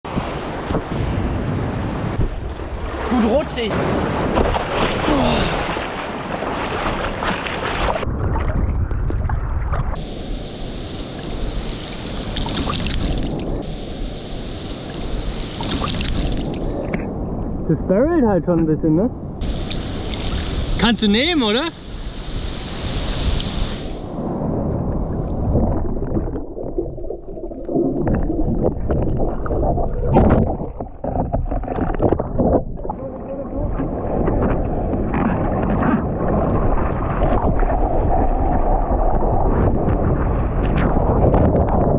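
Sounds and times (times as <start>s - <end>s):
ocean surf washing: 0.1s - 8.8s, 9.5s - 18.3s, 19.1s - 41.8s
wind buffeting microphone: 0.1s - 11.5s, 21.8s - 27.1s, 27.9s - 41.9s
water sloshing and splashing: 2.2s - 10.0s, 11.6s - 13.6s, 14.8s - 17.1s, 24.7s - 41.8s.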